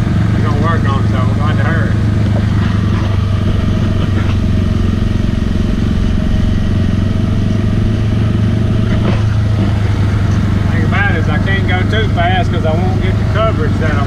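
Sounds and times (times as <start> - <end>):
utility vehicle engine droning: 0.0 - 14.0.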